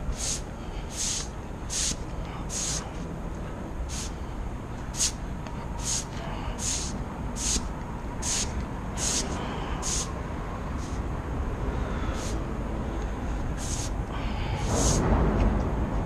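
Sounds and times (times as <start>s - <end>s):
low rumble: 1.4s - 16.0s
hissing scraping strokes: 5.8s - 10.2s, 13.6s - 15.1s.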